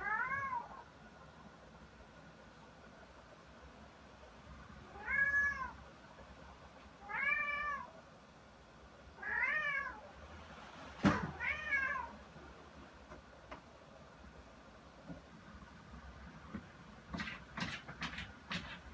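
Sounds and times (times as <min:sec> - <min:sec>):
cat meowing: 0:00.0 - 0:00.8, 0:04.9 - 0:05.8, 0:07.0 - 0:07.9, 0:09.2 - 0:10.0, 0:11.2 - 0:12.2.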